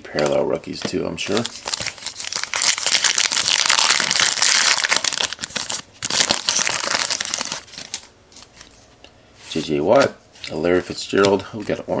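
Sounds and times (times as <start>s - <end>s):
wrapper crinkling as torn open: 1.3s - 8.1s.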